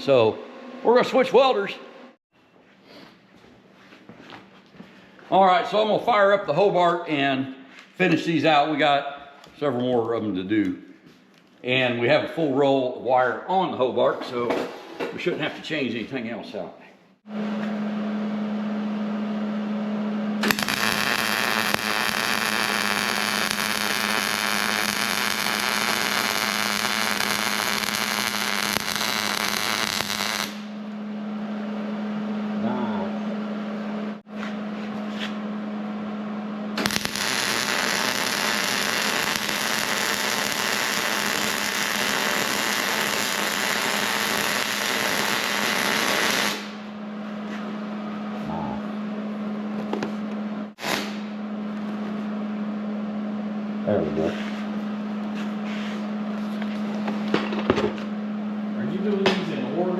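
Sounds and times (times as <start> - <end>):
welding arc crackling: 20.4 - 30.8, 36.8 - 46.9, 50.8 - 51.3.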